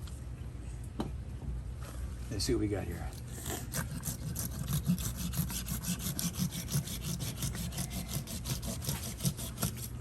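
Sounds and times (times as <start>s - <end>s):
knife sawing through flesh: 3.2s - 10.0s.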